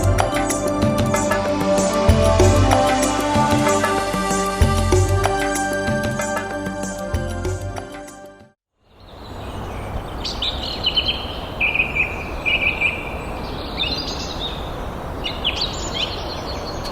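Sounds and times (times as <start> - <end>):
songbirds chirping: 8.8 - 16.9.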